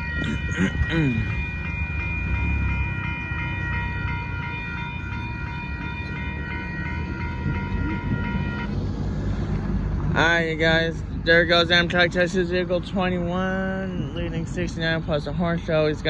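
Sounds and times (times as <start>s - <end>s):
high-pitched ringing tone: 0.0s - 8.8s
train rumbling past: 0.0s - 15.5s.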